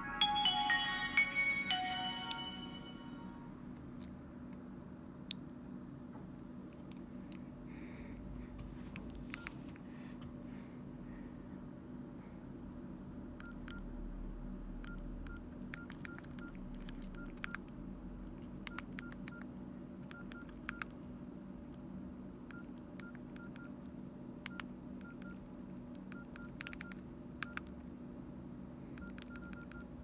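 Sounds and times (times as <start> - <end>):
faint steady hum: 0.0 - 30.0
keypad beeps: 14.8 - 17.7, 18.6 - 19.5, 20.1 - 21.0, 22.5 - 23.8, 24.5 - 25.4, 26.1 - 27.7, 29.0 - 30.0.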